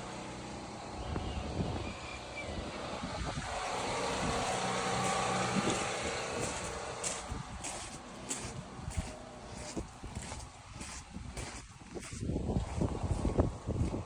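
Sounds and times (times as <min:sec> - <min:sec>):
vehicle passing: 0:02.6 - 0:10.9.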